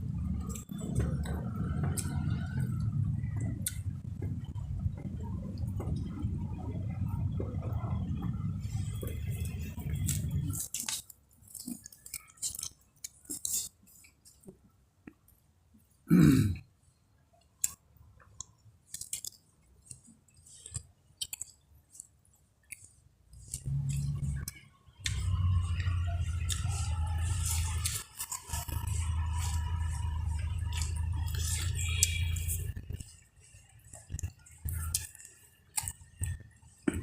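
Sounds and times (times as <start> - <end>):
person chewing food: 0.1 - 6.3, 7.2 - 15.4, 17.5 - 37.0
throat gulp: 16.1 - 16.7.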